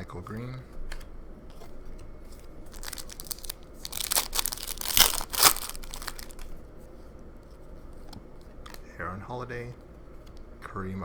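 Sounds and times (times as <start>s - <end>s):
wrapper tearing and crinkling: 2.7s - 6.6s.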